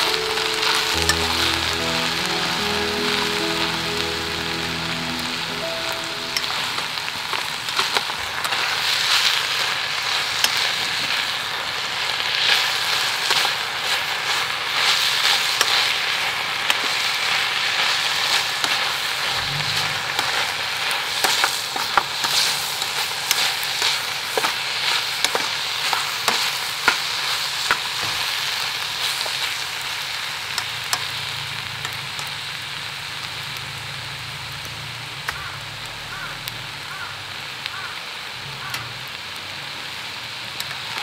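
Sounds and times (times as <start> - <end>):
chicken sizzling in a pan: 0.0 - 41.0.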